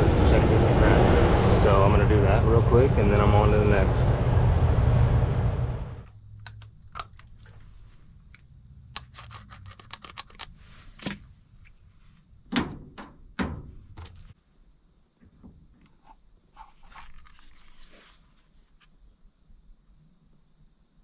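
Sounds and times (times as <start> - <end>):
low steady hum: 0.0 - 9.0
tools and metal parts clicking: 9.0 - 10.6.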